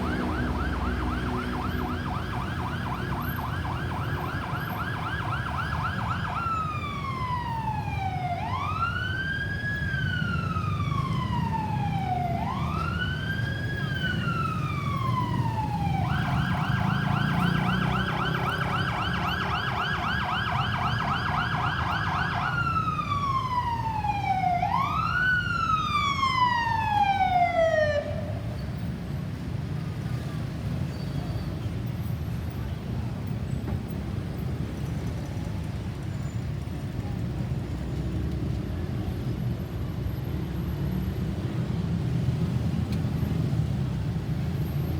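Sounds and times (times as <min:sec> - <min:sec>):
ambulance siren wailing: 0:00.0 - 0:28.6
engine and road rumble: 0:00.0 - 0:44.9.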